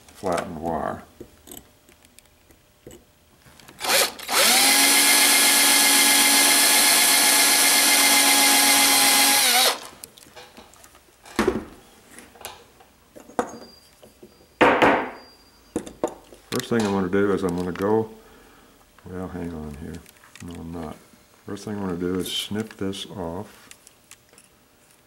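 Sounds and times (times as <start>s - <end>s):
electric drill whining: 3.8s - 10.0s
knock: 14.6s - 15.2s.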